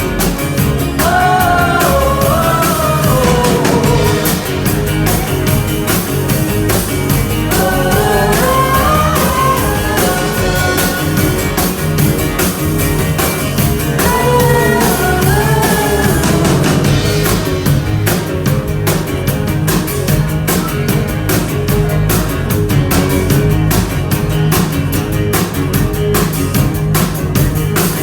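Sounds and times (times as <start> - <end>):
bass guitar: 0.0 - 28.0
drums: 0.0 - 28.0
electric guitar: 0.0 - 28.0
person singing: 0.9 - 5.3, 7.5 - 11.8, 13.9 - 17.1.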